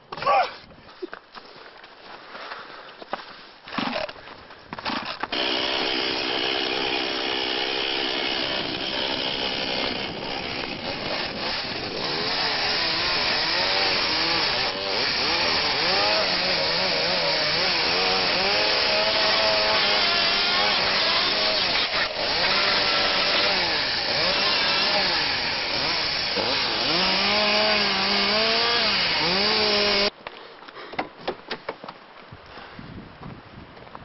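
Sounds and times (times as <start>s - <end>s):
chainsaw running under load: 4.8s - 30.1s.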